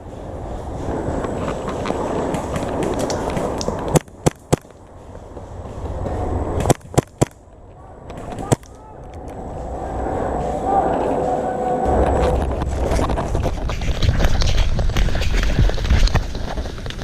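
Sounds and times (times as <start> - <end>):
rustling scraping noise: 9.1 - 17.0.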